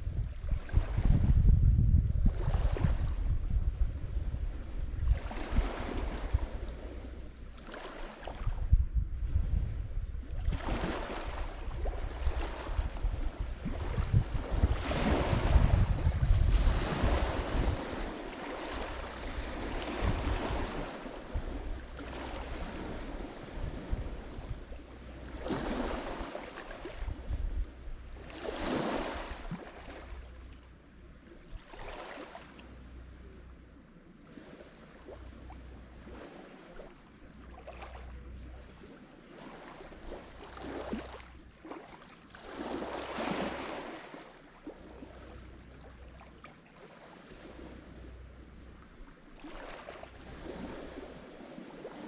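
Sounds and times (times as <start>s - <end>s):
waves breaking on shore: 0.0s - 1.5s, 2.2s - 33.4s, 34.0s - 52.0s
low rumble: 0.0s - 2.4s, 8.5s - 10.4s.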